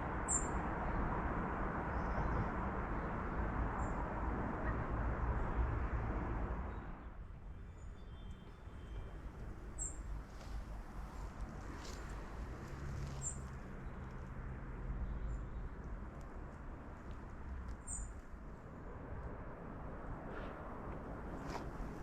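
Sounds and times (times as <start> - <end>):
wind gusting across microphone: 18.7 - 22.0.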